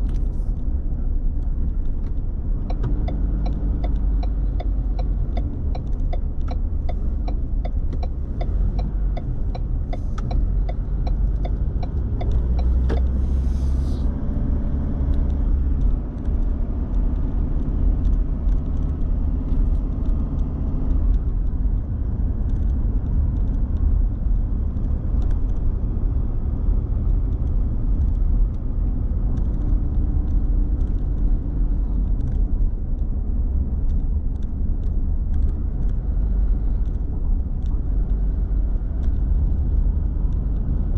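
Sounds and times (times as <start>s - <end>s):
engine and road noise: 0.0s - 40.9s
turn signal ticking: 0.1s - 13.4s.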